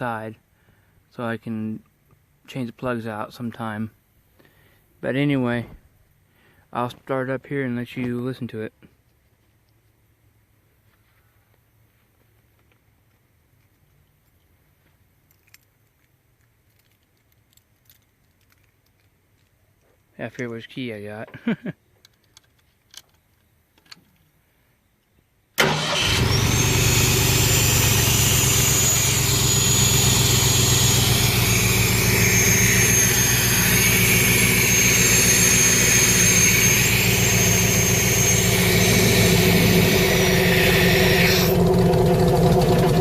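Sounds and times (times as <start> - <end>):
gasoline engine running: 25.6 - 43.0.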